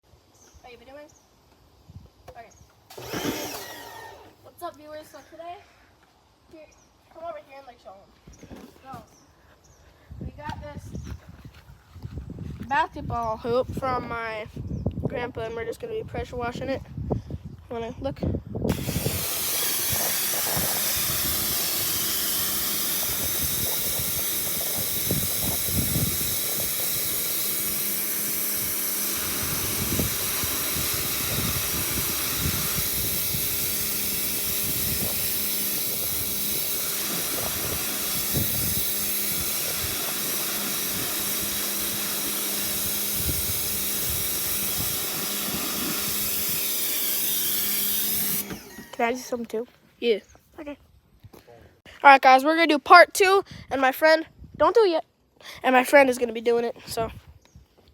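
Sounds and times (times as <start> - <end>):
pressure washer water jet hissing: 2.9 - 4.4, 18.7 - 49.3
pump humming: 2.9 - 4.4, 18.7 - 49.2.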